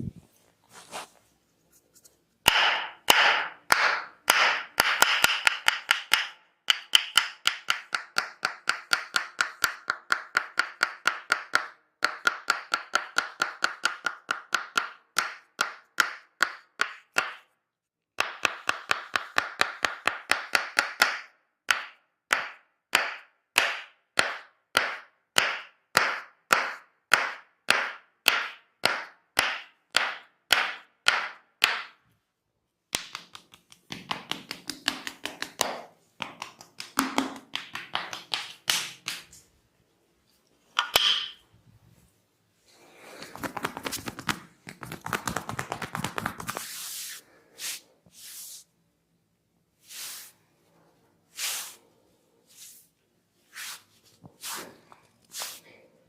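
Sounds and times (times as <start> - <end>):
wooden mallet striking wooden stick: 2.4 - 17.4, 18.2 - 32.0, 40.8 - 41.4.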